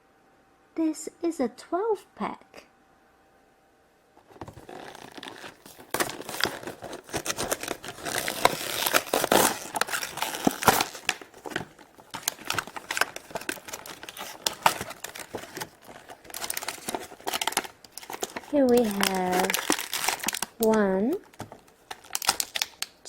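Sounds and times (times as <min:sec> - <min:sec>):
packaging tearing and crinkling: 0:04.2 - 0:23.0.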